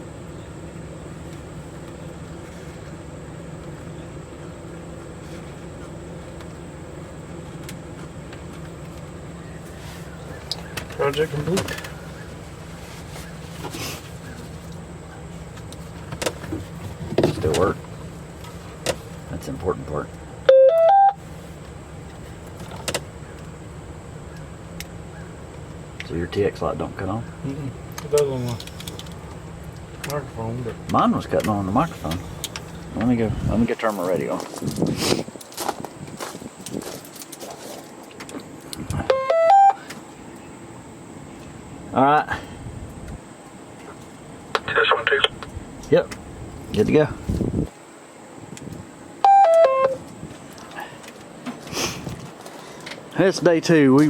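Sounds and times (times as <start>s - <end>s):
low mechanical hum: 0.0s - 54.0s
radio beep tone: 20.5s - 21.2s, 39.0s - 39.8s, 44.6s - 45.4s, 49.2s - 50.0s.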